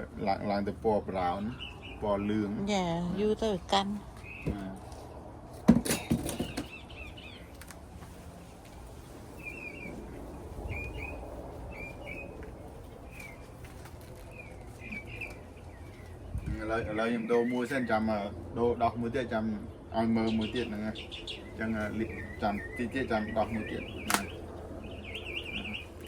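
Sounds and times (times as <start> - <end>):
sharp knock and clatter: 5.6 - 6.8
small bird chirping: 20.2 - 26.0.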